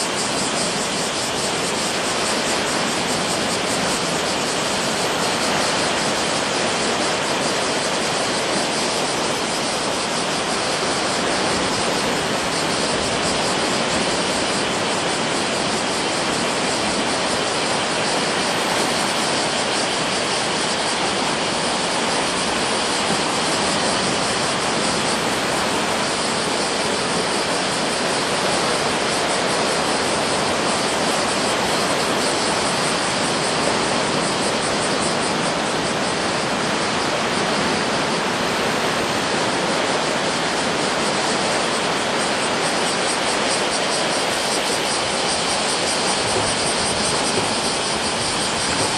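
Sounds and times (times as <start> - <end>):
surf roaring on beach: 0.0 - 48.9.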